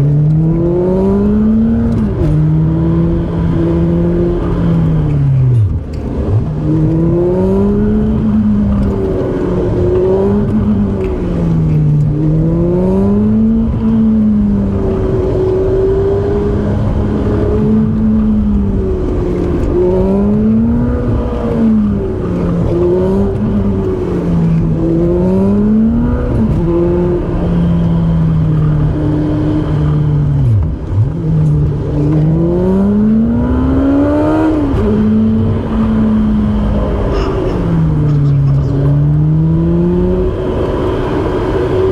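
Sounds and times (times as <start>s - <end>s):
car engine revving: 0.0s - 41.9s.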